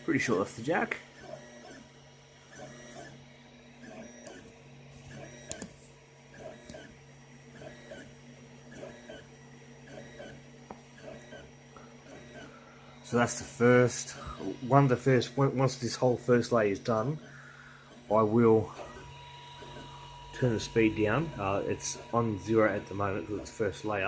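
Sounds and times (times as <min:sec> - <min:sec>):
printer steady hum: 0:00.0 - 0:24.0
stepper motors whirring chirps: 0:00.1 - 0:04.5, 0:05.1 - 0:05.7, 0:06.3 - 0:17.3, 0:17.9 - 0:24.0.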